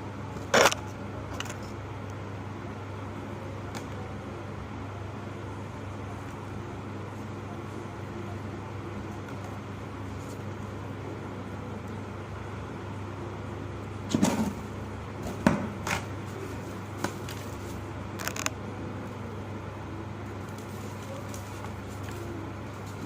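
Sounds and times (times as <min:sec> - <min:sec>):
steady low hum: 0:00.0 - 0:23.0.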